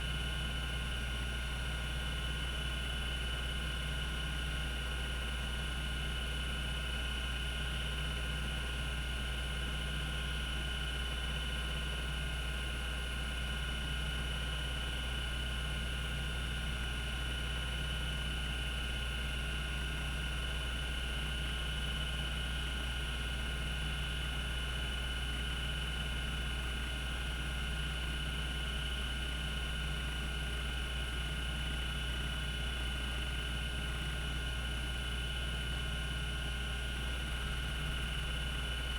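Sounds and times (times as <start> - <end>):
hard disk low hum: 36.6 - 38.9.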